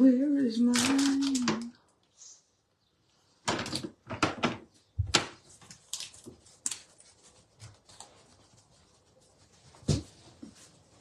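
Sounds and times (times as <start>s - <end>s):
objects knocking and clattering: 3.4s - 5.4s.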